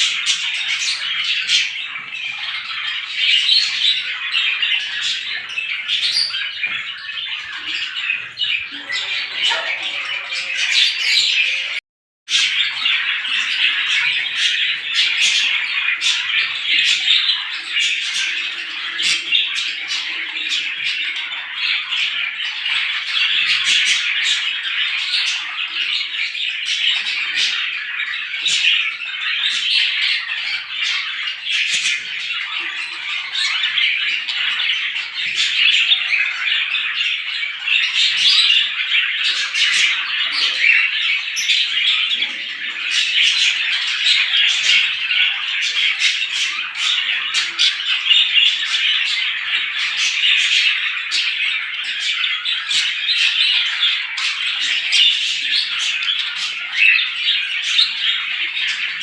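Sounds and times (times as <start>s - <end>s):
small birds chirping and squawking: 0.0s - 59.0s.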